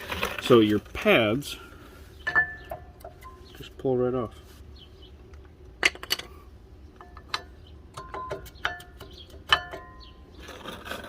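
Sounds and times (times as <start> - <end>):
metal brake pads clinking: 2.2 - 3.5, 7.0 - 10.2.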